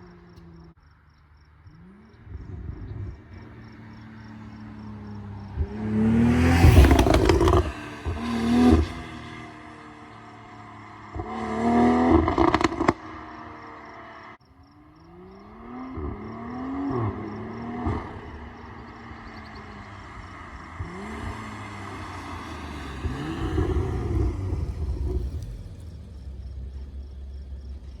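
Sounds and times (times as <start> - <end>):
car engine revving: 1.6 - 14.4, 15.0 - 28.0
exhaust crackles and pops: 6.5 - 9.1, 12.0 - 13.2, 19.4 - 28.0.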